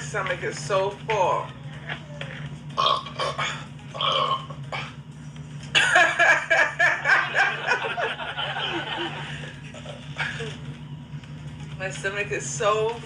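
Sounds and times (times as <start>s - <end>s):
woman burping: 2.8s - 5.0s.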